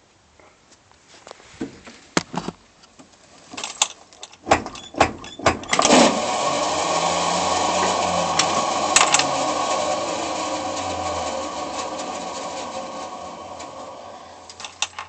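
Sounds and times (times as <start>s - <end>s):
starter motor clunking: 4.4s - 15.0s
engine running: 4.5s - 15.0s.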